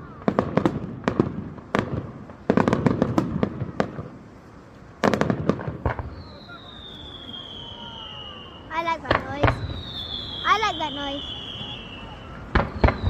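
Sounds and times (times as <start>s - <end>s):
fireworks bangs and pops: 0.0s - 13.0s.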